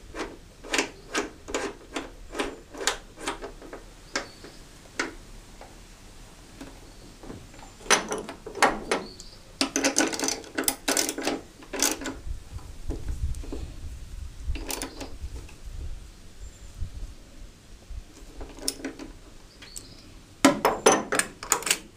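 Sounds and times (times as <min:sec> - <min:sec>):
ratchet clicking and clanking: 0:07.9 - 0:12.2.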